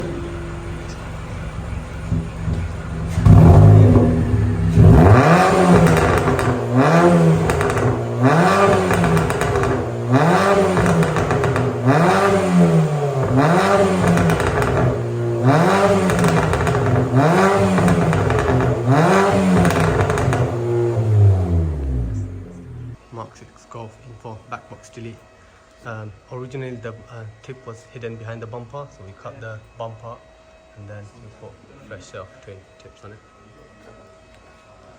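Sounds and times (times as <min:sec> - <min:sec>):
car engine revving: 0:00.0 - 0:23.0
exhaust pops and crackles: 0:00.0 - 0:23.0.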